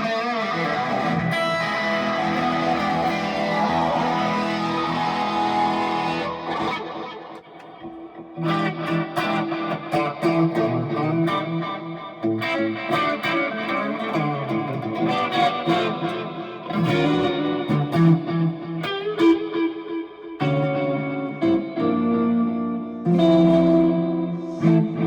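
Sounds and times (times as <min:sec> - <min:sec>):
electric guitar playing: 0:00.0 - 0:25.0.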